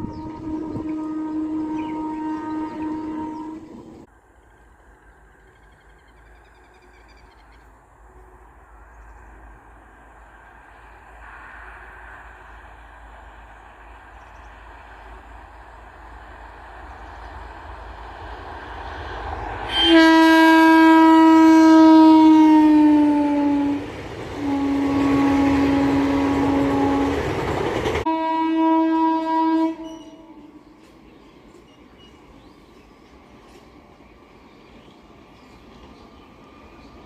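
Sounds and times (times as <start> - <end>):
train horn blast: 0.0 - 4.1, 19.6 - 30.9
train rumble: 0.0 - 37.0.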